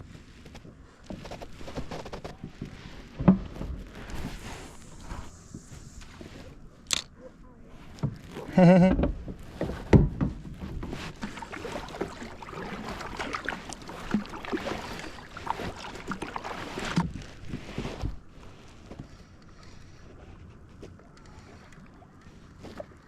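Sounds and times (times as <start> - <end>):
knocks and clatter on a kayak: 0.5 - 4.4, 7.8 - 19.8
water splashing: 9.4 - 18.6.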